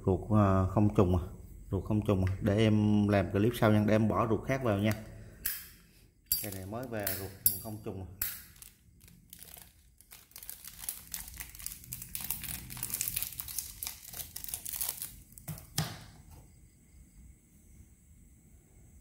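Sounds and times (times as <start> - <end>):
plastic wrapping crinkling: 8.3 - 15.8.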